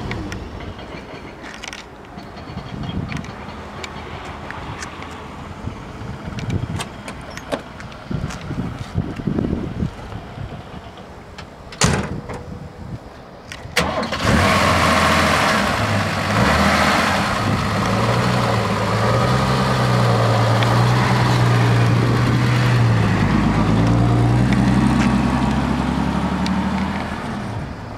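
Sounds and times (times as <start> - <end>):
car engine starting and running: 13.4 - 27.9.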